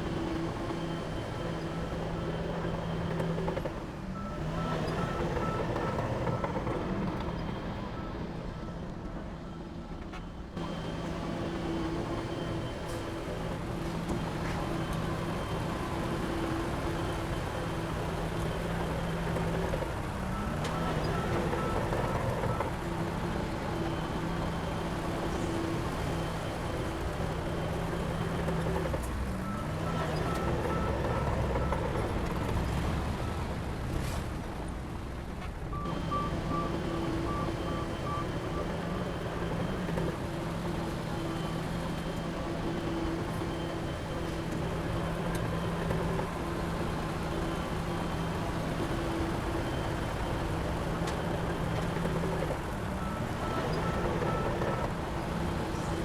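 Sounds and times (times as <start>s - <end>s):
heavy diesel machinery running: 0.0s - 56.0s
faint repeating beep: 35.7s - 46.3s.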